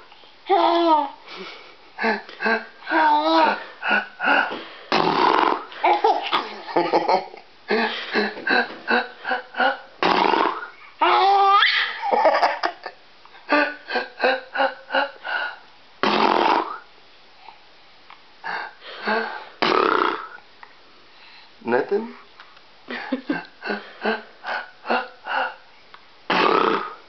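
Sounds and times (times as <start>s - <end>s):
child giggling: 5.8s - 7.4s, 11.0s - 15.1s
man sneezing loudly: 26.3s - 27.0s.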